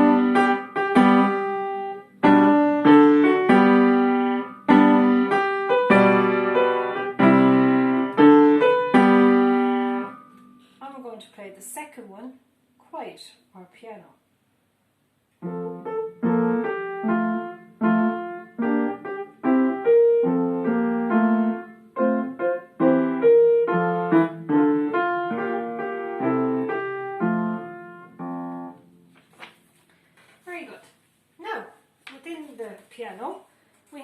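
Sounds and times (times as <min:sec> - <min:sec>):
quiet piano piece: 0:00.0 - 0:10.9, 0:15.3 - 0:29.5.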